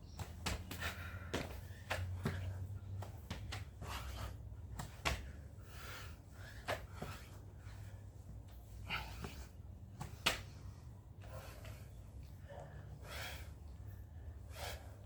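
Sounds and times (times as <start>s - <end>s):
breathing: 0.7s - 2.8s, 5.2s - 9.6s, 11.2s - 15.0s.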